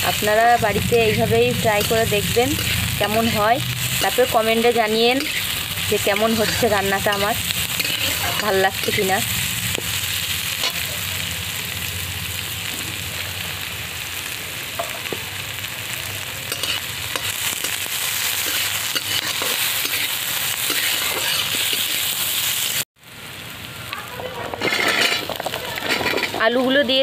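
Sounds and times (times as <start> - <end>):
onions sizzling in hot oil: 0.0 - 27.0
spatula scraping and clinking: 1.0 - 10.9, 16.5 - 22.0, 24.5 - 26.6.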